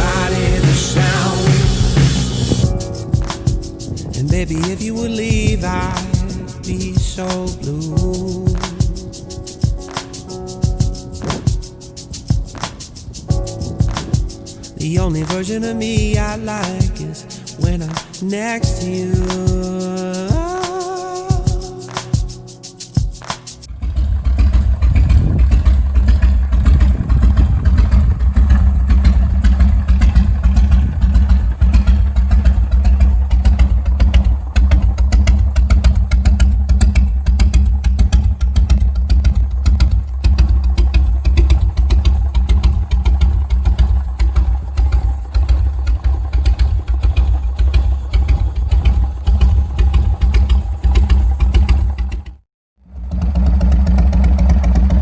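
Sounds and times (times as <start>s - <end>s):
motorcycle engine idling: 0.0s - 9.2s, 23.7s - 55.0s.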